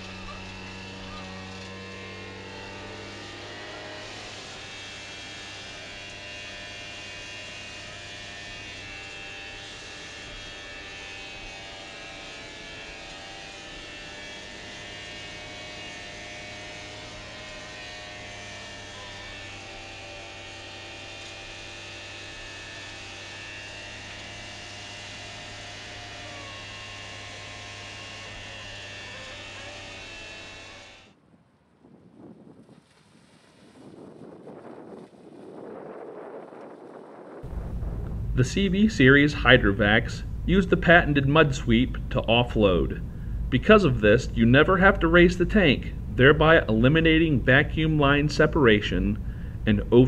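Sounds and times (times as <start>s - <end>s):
truck engine hum: 0.0s - 31.2s, 35.5s - 50.0s
high steady tones: 37.4s - 50.0s.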